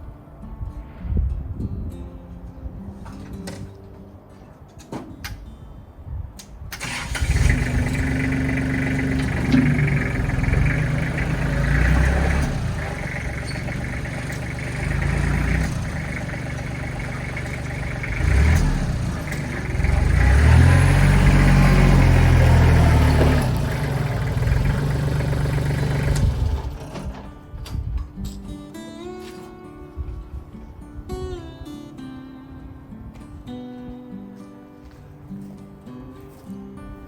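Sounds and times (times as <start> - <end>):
engine revving: 6.8 - 27.1.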